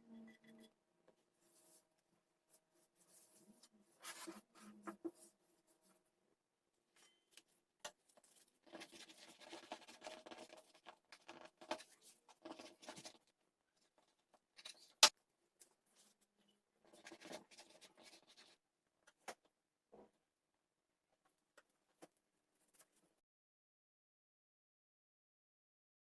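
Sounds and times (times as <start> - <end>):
rustling and scraping with utensils: 0.0 - 6.0, 6.9 - 19.4.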